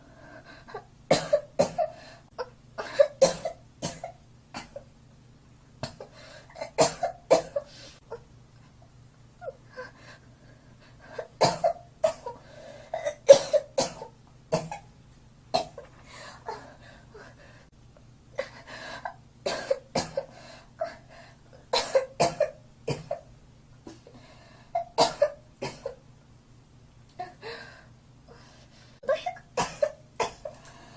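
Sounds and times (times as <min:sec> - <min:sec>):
girl coughing: 0:01.1 - 0:02.0, 0:02.8 - 0:04.8, 0:05.8 - 0:07.7, 0:11.4 - 0:12.4, 0:13.0 - 0:14.8, 0:21.8 - 0:23.2, 0:24.8 - 0:26.0, 0:29.1 - 0:30.6.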